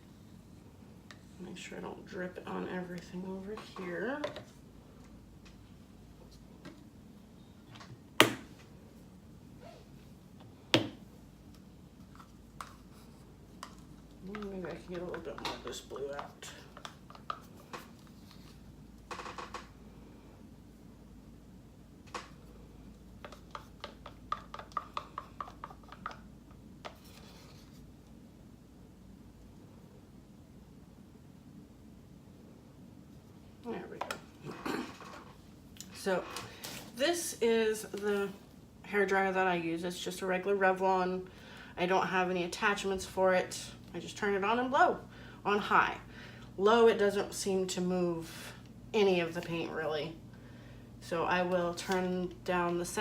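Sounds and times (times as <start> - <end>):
rapid tapping on a cup: 23.2 - 26.2.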